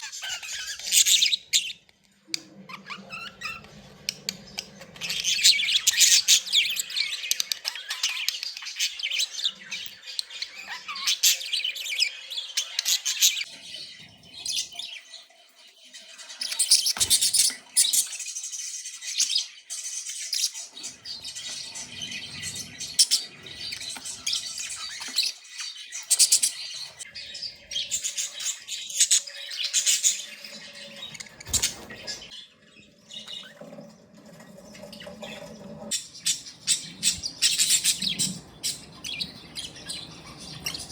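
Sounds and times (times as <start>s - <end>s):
budgerigars chattering: 35.3s - 40.9s.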